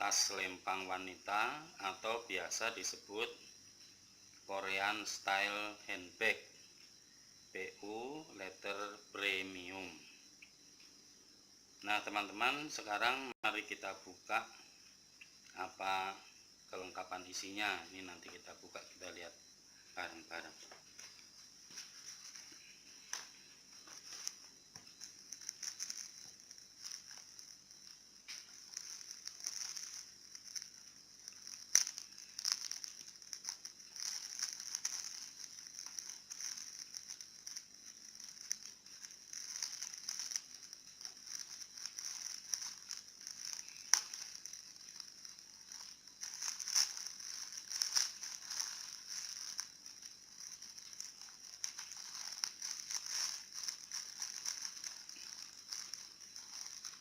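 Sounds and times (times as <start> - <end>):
plastic packaging crinkling: 20.8 - 57.0.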